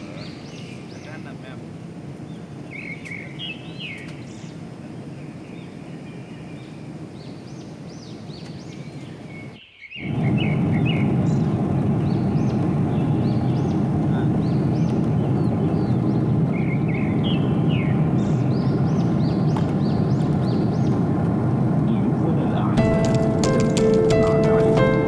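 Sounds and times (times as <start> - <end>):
small birds chirping: 0.0 - 21.3
steady rushing noise: 10.0 - 25.0.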